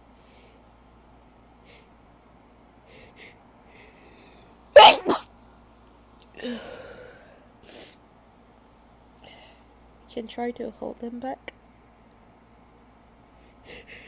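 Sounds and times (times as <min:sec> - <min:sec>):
breathy noises: 0:04.8 - 0:05.2
woman sneezing: 0:04.8 - 0:05.2.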